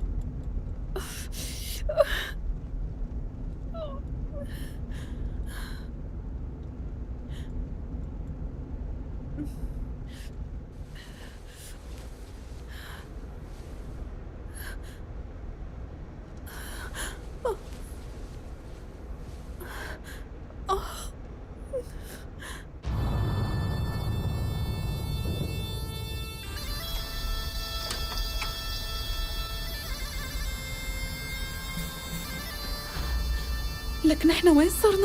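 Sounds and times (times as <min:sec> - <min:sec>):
low rumble: 0:00.0 - 0:35.0.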